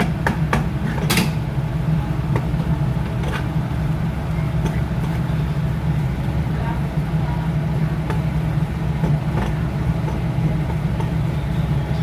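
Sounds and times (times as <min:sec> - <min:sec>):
low engine-like hum: 0:00.0 - 0:12.0.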